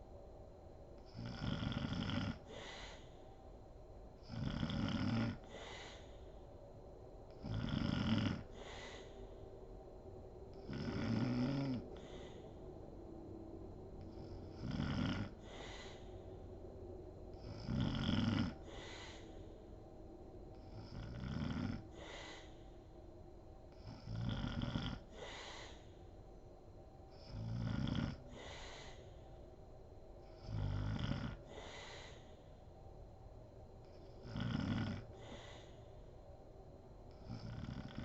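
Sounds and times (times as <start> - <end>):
woman snoring: 1.0 - 3.2, 4.2 - 6.3, 7.4 - 9.2, 10.6 - 12.5, 14.1 - 16.3, 17.4 - 19.5, 20.6 - 22.8, 23.8 - 26.1, 27.2 - 29.2, 30.3 - 32.4, 34.2 - 35.8, 37.2 - 38.0
breathy exhale: 2.4 - 3.4, 5.4 - 6.5, 8.4 - 9.6, 10.5 - 12.7, 15.2 - 16.6, 18.6 - 19.8, 21.8 - 23.0, 25.0 - 26.2, 28.3 - 29.4, 31.4 - 32.7, 35.0 - 36.2.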